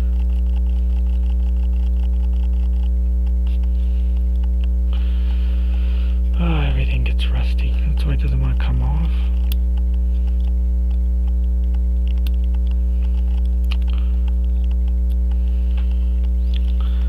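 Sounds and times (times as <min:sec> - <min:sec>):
electrical mains hum: 0:00.0 - 0:17.0.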